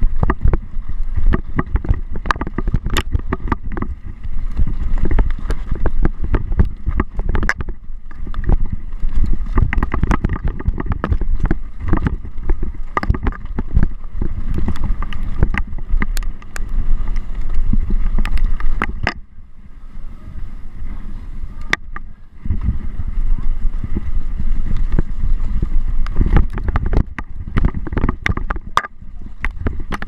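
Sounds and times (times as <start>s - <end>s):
mountain bike rattling and knocking: 0.0s - 19.2s, 23.4s - 30.0s
low rumble: 0.0s - 30.0s
wind buffeting microphone: 0.0s - 30.0s.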